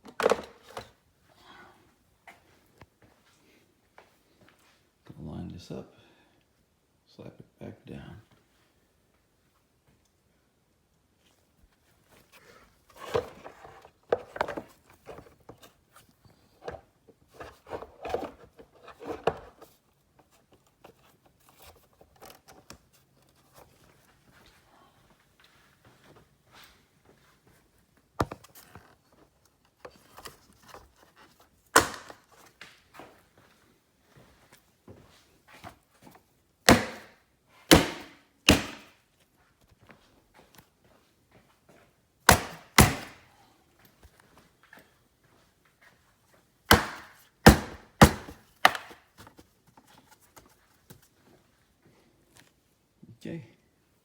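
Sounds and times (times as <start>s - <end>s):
hand slapping car trim panel: 36.7s - 37.1s, 37.7s - 38.9s, 42.3s - 43.2s, 46.7s - 48.9s
sharp knocks: 36.7s - 37.1s, 37.7s - 38.9s, 42.3s - 43.2s, 46.7s - 48.9s.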